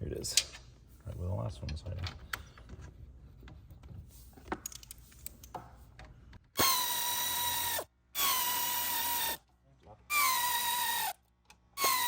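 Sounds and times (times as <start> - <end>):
cordless drill whining: 6.6 - 9.4, 10.1 - 11.2, 11.8 - 12.0.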